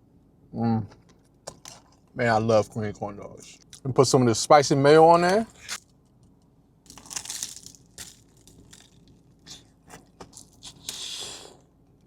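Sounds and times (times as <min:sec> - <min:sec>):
crunchy bites and chewing: 0:06.8 - 0:11.6.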